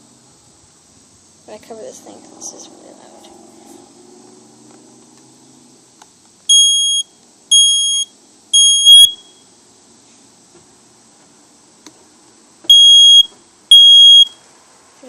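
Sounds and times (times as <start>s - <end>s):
smoke alarm beeps: 6.5s - 9.5s, 12.7s - 14.4s.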